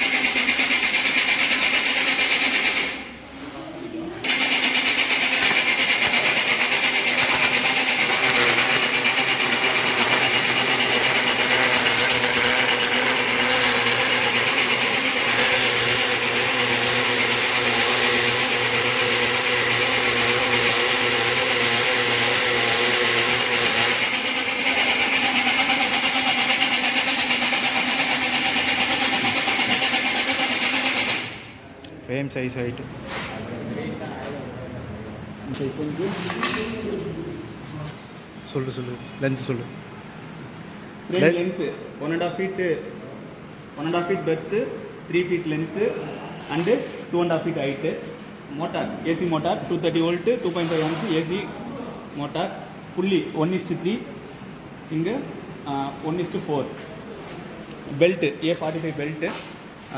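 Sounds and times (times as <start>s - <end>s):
workshop machine whining and rasping: 0.0s - 3.6s, 4.2s - 31.7s, 35.1s - 51.6s.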